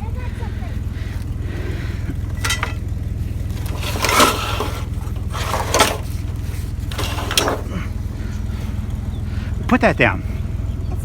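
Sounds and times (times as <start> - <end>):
junk scraping and clattering: 1.4 - 8.6.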